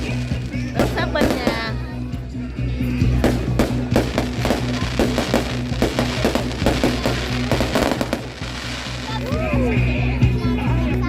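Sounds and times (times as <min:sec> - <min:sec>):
fireworks cracking and banging: 0:00.0 - 0:01.9, 0:03.1 - 0:09.7
background music: 0:00.0 - 0:11.0.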